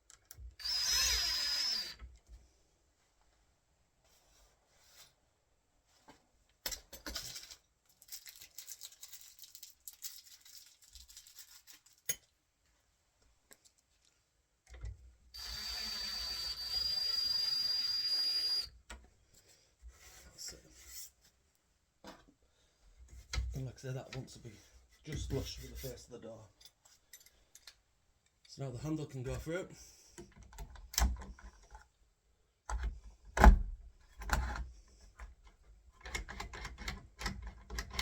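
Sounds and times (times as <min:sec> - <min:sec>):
cordless drill whining: 0:00.6 - 0:02.1, 0:15.4 - 0:18.8
handling and rubbing sounds: 0:02.9 - 0:06.5, 0:19.3 - 0:22.4, 0:23.0 - 0:27.1.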